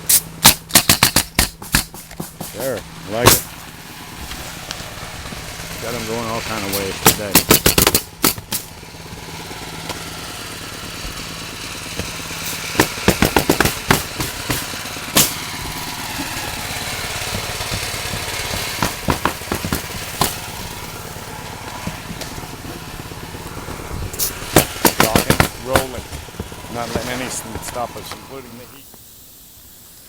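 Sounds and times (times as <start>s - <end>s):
nail guns firing: 0.0s - 3.5s, 6.7s - 8.8s, 11.9s - 20.8s, 24.2s - 28.3s
air compressor engine running: 0.0s - 30.0s.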